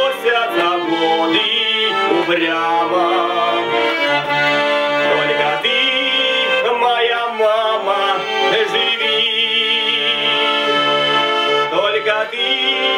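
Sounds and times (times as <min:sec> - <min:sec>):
button accordion melody: 0:00.0 - 0:12.9.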